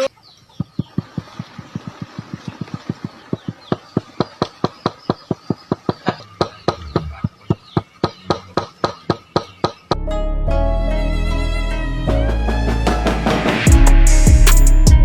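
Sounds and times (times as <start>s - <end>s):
string music: 10.0s - 15.0s.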